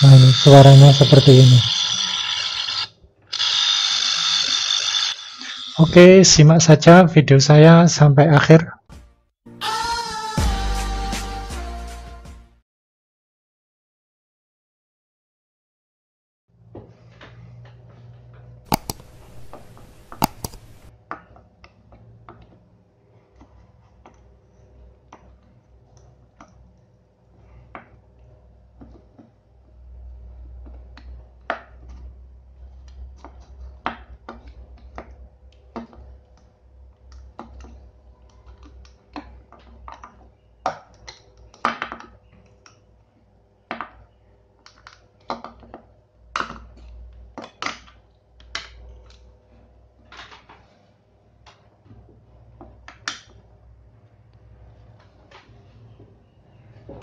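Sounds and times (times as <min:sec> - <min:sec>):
small tools clicking and tapping: 0:00.0 - 0:05.8, 0:18.7 - 0:22.6.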